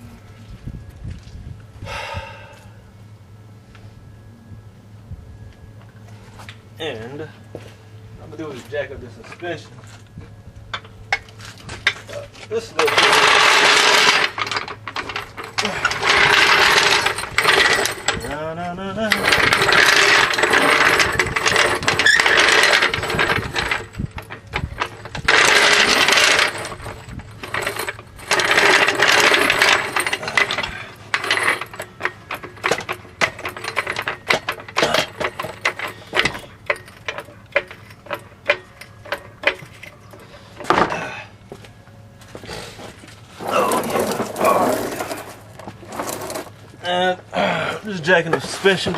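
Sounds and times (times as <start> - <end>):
jack scraping and pumping: 10.7 - 41.6, 42.3 - 46.8, 47.6 - 48.9.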